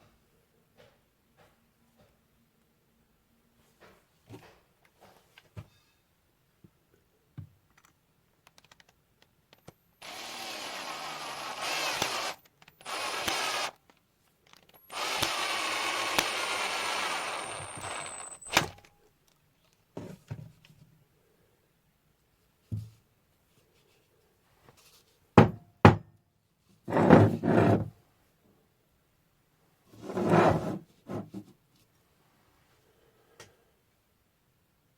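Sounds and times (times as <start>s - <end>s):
small power tool motor: 10.0s - 13.8s, 14.8s - 18.8s.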